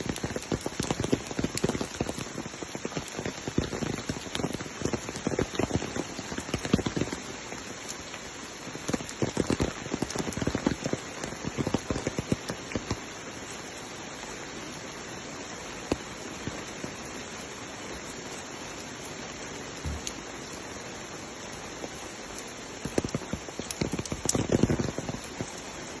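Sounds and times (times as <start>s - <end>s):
raindrop strikes: 0.0s - 8.0s, 8.7s - 13.0s, 19.8s - 20.6s, 22.4s - 25.7s
rain falling: 0.0s - 26.0s.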